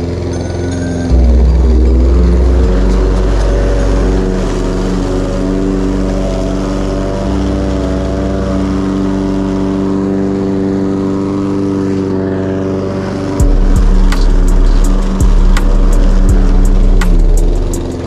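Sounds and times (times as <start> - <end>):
deep bass: 0.0 - 9.5, 13.4 - 18.0
lawn mower engine running: 0.0 - 18.0.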